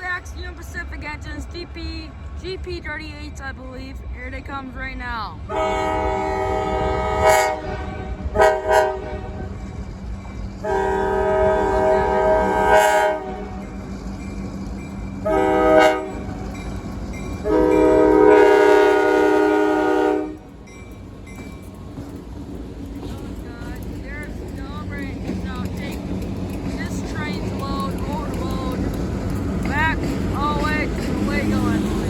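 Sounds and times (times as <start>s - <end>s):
diesel engine drone: 0.0s - 20.6s, 23.2s - 32.0s
locomotive air horn blasts: 5.5s - 9.6s, 10.6s - 13.7s, 15.2s - 16.4s, 17.4s - 20.4s.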